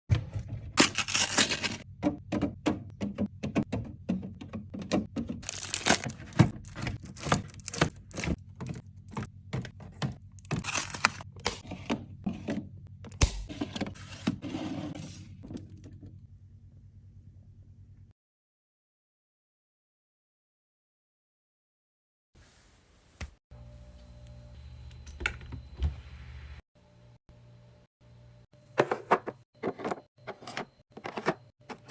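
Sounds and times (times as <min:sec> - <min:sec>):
items being handled and set down: 0:00.1 - 0:16.2, 0:28.7 - 0:31.9
plastic packaging crinkling: 0:00.8 - 0:01.8, 0:05.4 - 0:08.3, 0:10.6 - 0:11.2.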